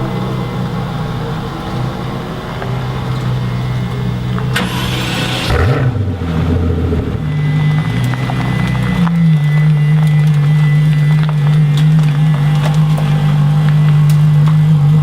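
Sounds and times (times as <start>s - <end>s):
rushing burst of noise: 0.0s - 10.0s
car engines running: 0.0s - 15.0s.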